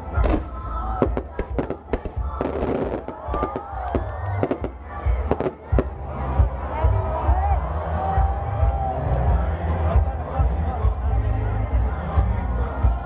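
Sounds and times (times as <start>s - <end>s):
fireworks banging: 0.0s - 6.0s
fireworks crackling: 0.0s - 6.3s
onlookers' voices: 0.0s - 13.0s.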